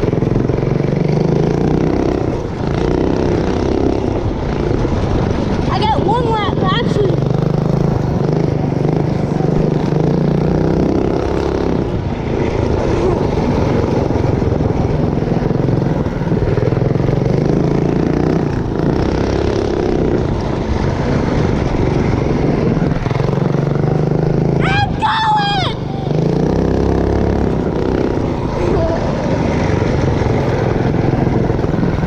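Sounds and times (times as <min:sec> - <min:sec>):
minibike engine revving: 0:00.0 - 0:32.0.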